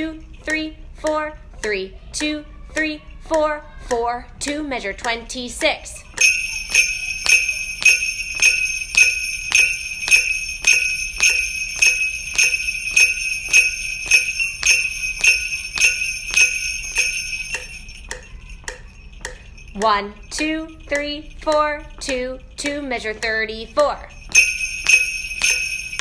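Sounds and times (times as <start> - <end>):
sleigh bells shaken rhythmically: 6.2 - 26.0.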